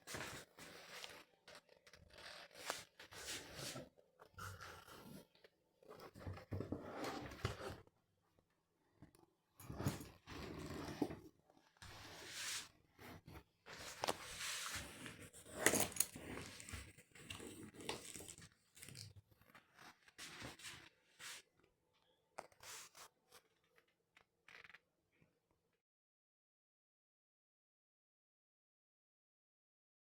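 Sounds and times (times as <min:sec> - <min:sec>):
handling rustles and scrapes: 0:00.0 - 0:05.3, 0:09.6 - 0:21.6, 0:22.4 - 0:23.9.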